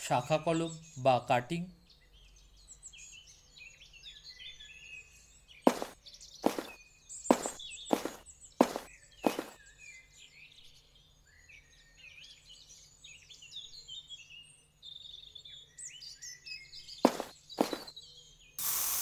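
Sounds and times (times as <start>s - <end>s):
small birds chirping: 0.0s - 19.0s
sharp chopping strikes: 5.7s - 6.7s, 7.3s - 9.6s, 17.1s - 17.9s.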